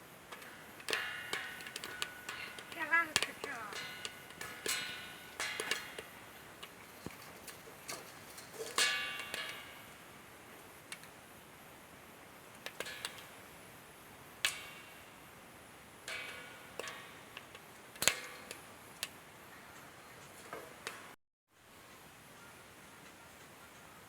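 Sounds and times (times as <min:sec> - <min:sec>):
low hiss: 0:00.0 - 0:24.0
kernels popping in a pan: 0:00.1 - 0:09.9.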